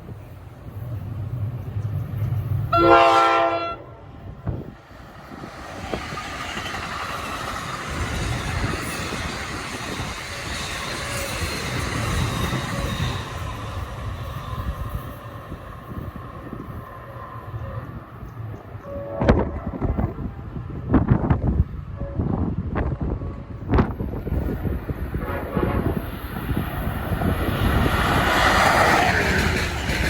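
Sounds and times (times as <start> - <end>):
train wheels on rails: 0.0 - 3.3, 4.1 - 30.0
train horn blast: 2.7 - 4.0, 18.8 - 20.1, 22.0 - 22.4, 25.1 - 26.1.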